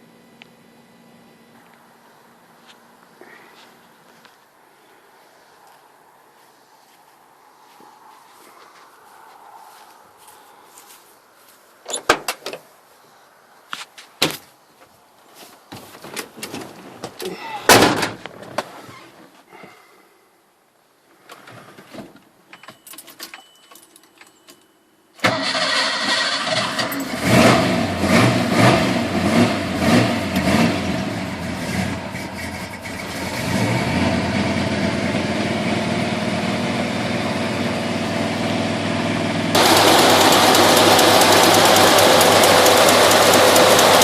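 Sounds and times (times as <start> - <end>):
car engine starting and idling: 25.2 - 44.0.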